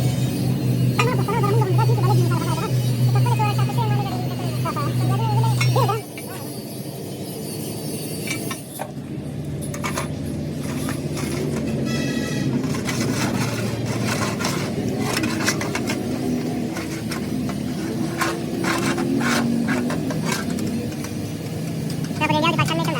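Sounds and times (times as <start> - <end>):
machine humming: 0.2 - 6.4
sharp clicks and knocks: 16.7 - 22.2.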